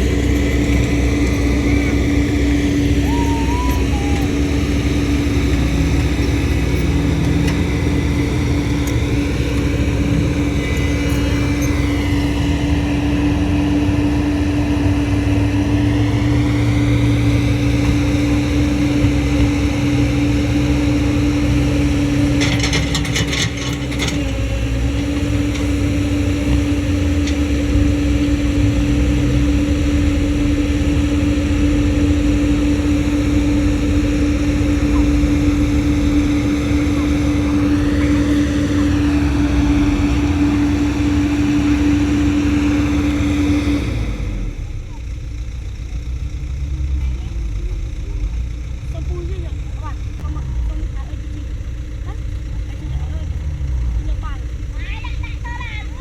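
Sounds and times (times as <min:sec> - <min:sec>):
excavator engine and hydraulics: 0:00.0 - 0:56.0.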